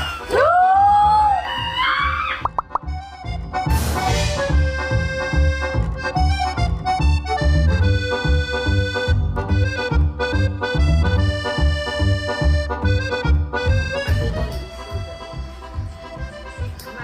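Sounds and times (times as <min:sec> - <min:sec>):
accordion music: 0:02.5 - 0:17.0
steady bass beat: 0:04.1 - 0:16.8.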